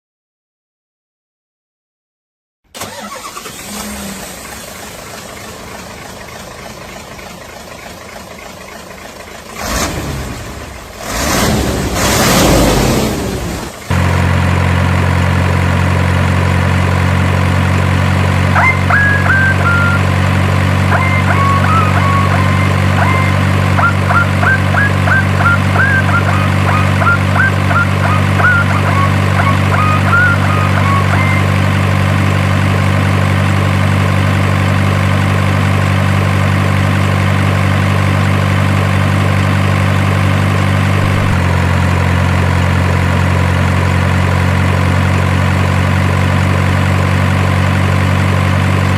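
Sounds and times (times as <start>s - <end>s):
truck engine idling: 2.8s - 48.9s
short high chirps: 18.6s - 31.6s.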